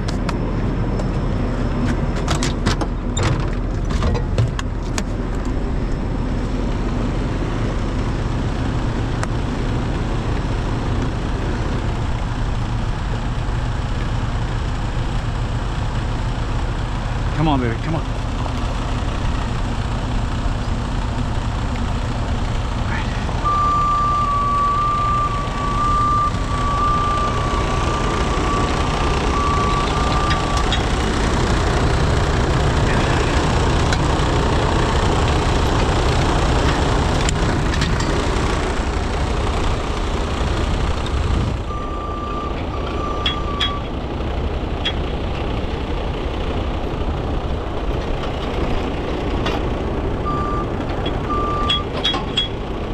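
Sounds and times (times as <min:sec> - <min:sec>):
truck diesel engine running: 0:00.0 - 0:52.9
backup alarm beeping: 0:23.4 - 0:30.9, 0:50.3 - 0:52.5.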